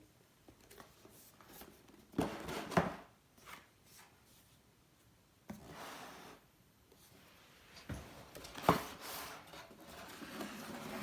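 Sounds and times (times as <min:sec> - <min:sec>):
cardboard box sliding and rubbing: 0:08.9 - 0:11.0.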